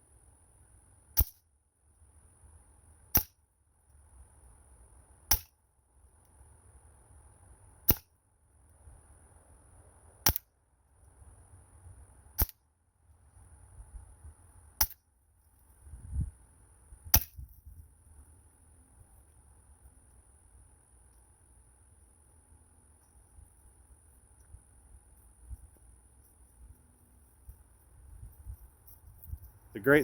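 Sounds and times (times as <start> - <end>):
air gun shots: 3.1 - 3.3, 12.4 - 12.6.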